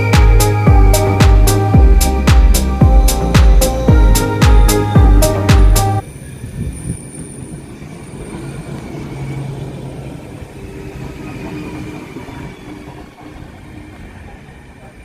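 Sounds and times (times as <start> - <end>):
high-pitched wheel squeal: 6.0 - 15.0
train rumbling past on rails: 6.0 - 15.0.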